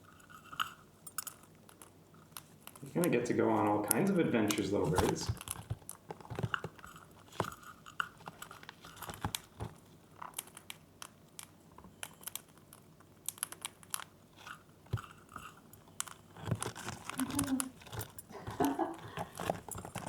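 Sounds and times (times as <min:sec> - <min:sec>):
birds cracking seeds: 0:00.4 - 0:09.6, 0:13.2 - 0:20.0.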